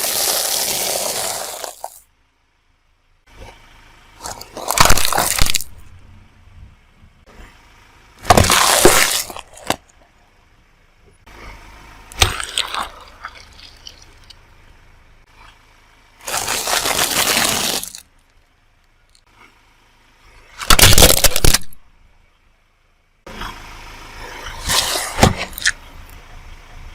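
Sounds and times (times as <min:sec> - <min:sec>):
objects crushed under car tyre: 0:00.0 - 0:02.0, 0:04.2 - 0:05.9, 0:08.2 - 0:10.0, 0:12.1 - 0:14.4, 0:16.2 - 0:18.5, 0:20.5 - 0:21.8, 0:24.6 - 0:25.8.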